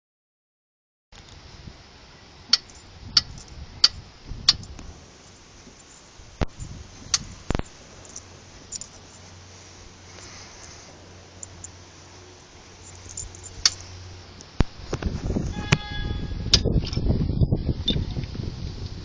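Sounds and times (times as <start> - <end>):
shock absorber metallic clicks: 2.5 - 4.9, 6.4 - 9.2, 12.8 - 13.8.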